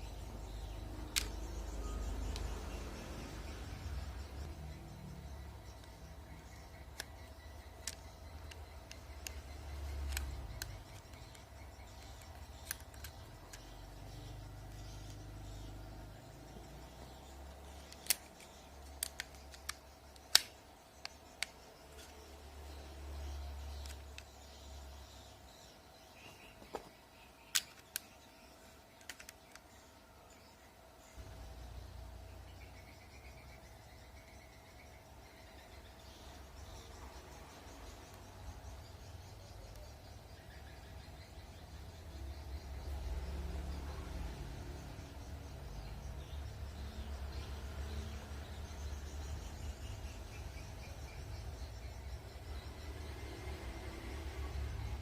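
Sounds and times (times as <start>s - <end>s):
faint high twittering: 0.0s - 55.0s
faint steady tone: 0.0s - 55.0s
swiftlet echolocation clicks: 0.1s - 26.2s, 27.4s - 30.4s.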